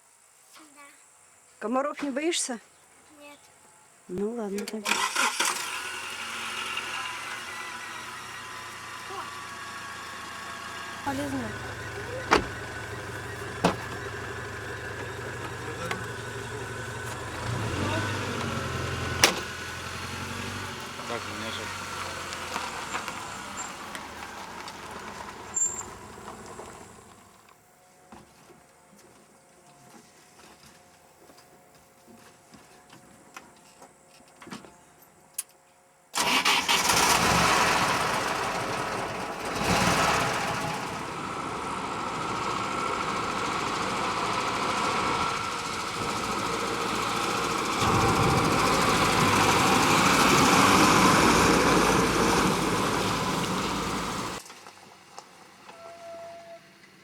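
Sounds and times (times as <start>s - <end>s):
vehicle engine and road noise: 4.1s - 28.2s, 36.2s - 55.9s.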